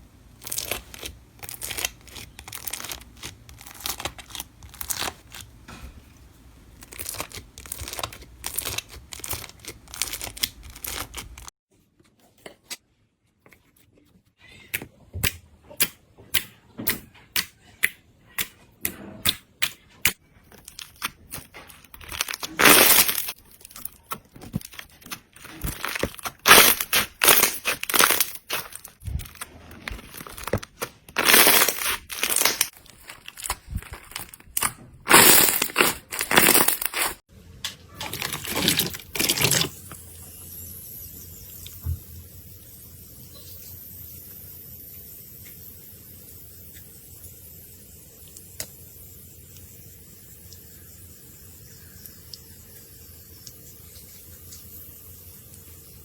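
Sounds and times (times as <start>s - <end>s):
slime crackling and popping: 0.4s - 5.5s, 6.8s - 11.5s, 20.5s - 37.2s
crunchy squelches: 20.1s - 37.2s, 37.9s - 39.9s.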